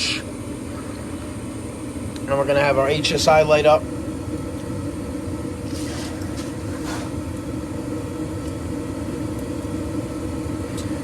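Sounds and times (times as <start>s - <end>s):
furnace motor humming: 0.0s - 11.0s.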